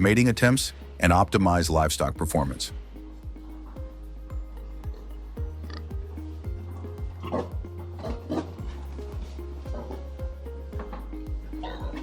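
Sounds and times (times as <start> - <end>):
sustained bass: 0.0 - 12.0
deep kick drum: 2.7 - 12.0.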